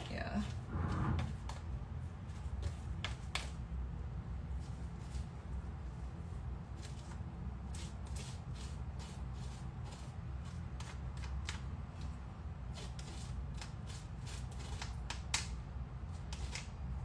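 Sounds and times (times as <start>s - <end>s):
steady low hum: 0.0s - 2.8s.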